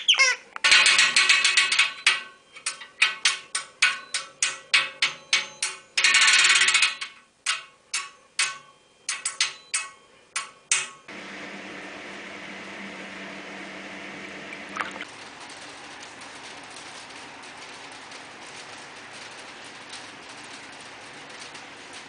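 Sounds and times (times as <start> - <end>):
low hum: 11.1 - 15.7.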